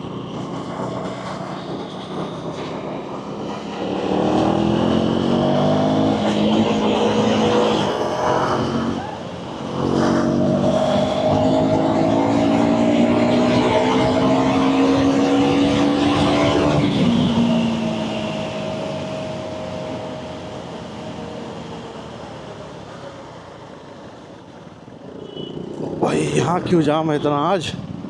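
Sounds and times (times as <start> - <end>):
motorcycle engine revving: 0.0 - 21.7.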